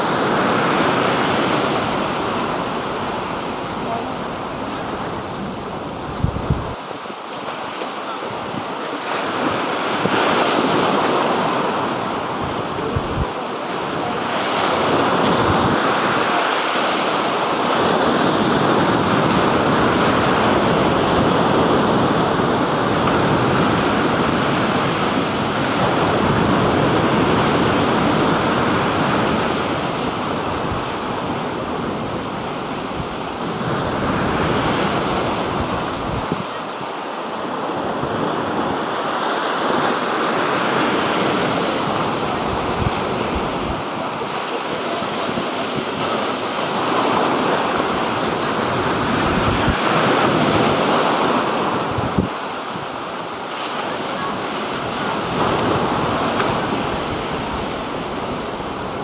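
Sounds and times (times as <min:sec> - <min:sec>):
surf breaking on shore: 0:00.0 - 0:59.0
wind buffeting microphone: 0:04.3 - 0:07.0, 0:09.3 - 0:16.3, 0:17.2 - 0:36.6, 0:41.2 - 0:44.3, 0:45.0 - 0:53.0.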